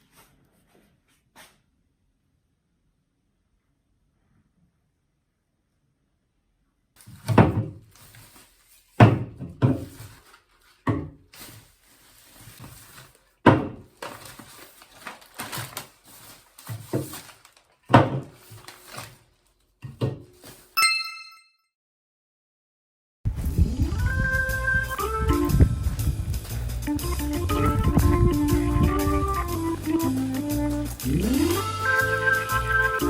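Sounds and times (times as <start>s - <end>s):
dull thunks and knocks: 7.2s - 7.8s, 9.0s - 10.0s, 13.5s - 13.8s, 17.9s - 18.3s
short bright chime: 20.8s - 21.6s.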